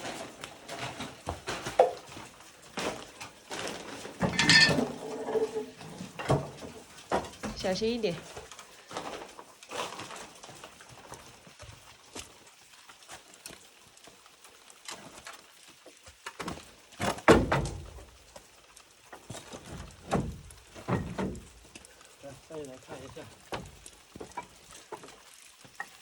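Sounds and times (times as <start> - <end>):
thuds and knocks: 17.0 - 18.1, 19.6 - 21.5.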